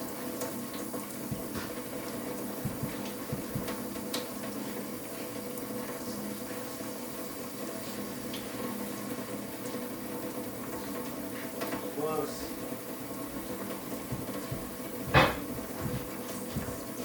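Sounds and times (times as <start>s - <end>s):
water rushing through plumbing: 0.0s - 17.0s
steady hum: 1.0s - 4.0s
light knocks: 15.1s - 16.0s.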